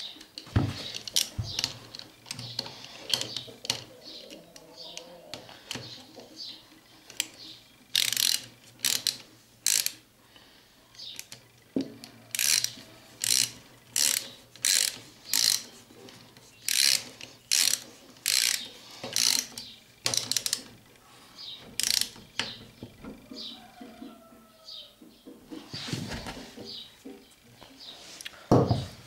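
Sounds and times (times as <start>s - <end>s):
ratchet wrench clicking: 7.9s - 10.0s, 12.3s - 15.7s, 16.6s - 20.7s, 21.8s - 22.5s.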